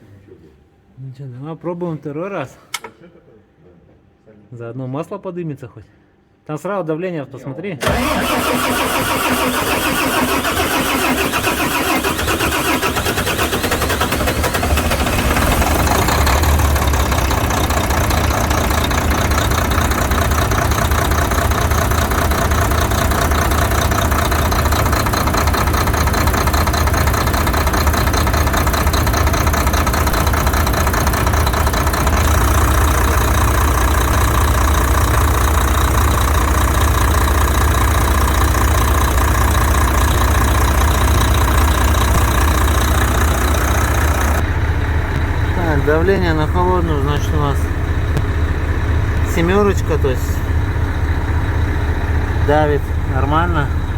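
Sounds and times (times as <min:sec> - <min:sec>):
starter motor cranking: 0:07.8 - 0:44.4
diesel engine idling: 0:07.8 - 0:53.9.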